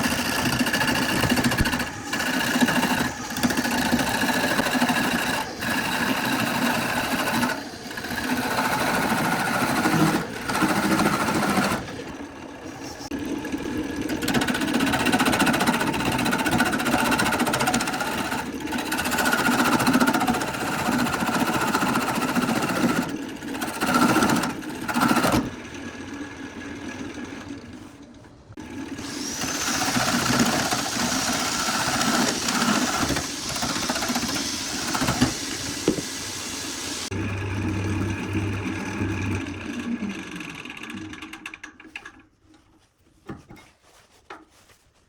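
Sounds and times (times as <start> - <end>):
power tool motor running: 0.0 - 13.4, 28.6 - 41.2.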